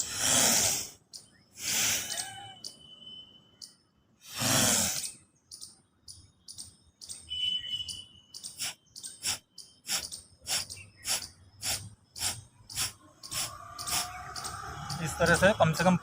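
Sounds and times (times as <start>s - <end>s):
forceful breaths through the nose: 0.0s - 2.4s, 4.2s - 5.2s, 8.6s - 14.2s
sharp exhaled puffs: 0.0s - 2.4s, 4.2s - 5.2s, 8.6s - 14.2s.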